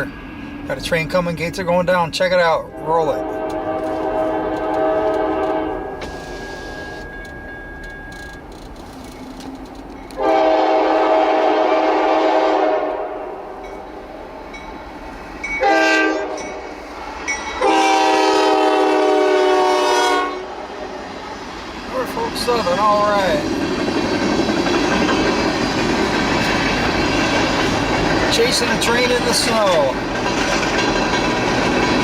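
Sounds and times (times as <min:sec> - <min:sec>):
locomotive air horn blasts: 0:02.7 - 0:07.0, 0:10.2 - 0:13.4, 0:15.6 - 0:16.5, 0:17.6 - 0:20.6.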